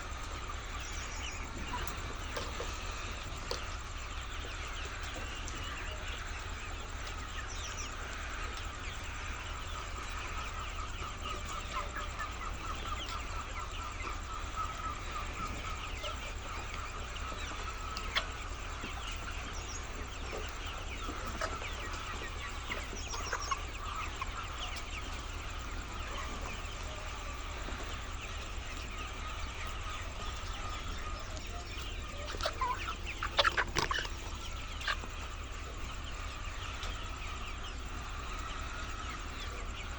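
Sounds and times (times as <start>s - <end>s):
hens clucking: 0.0s - 39.9s.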